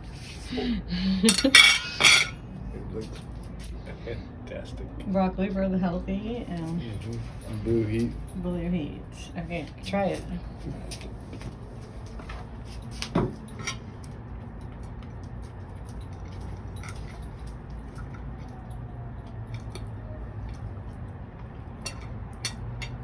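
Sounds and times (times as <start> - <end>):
low steady hum: 0.0 - 23.0
cutlery clinking on plate: 1.3 - 2.4, 21.8 - 23.0.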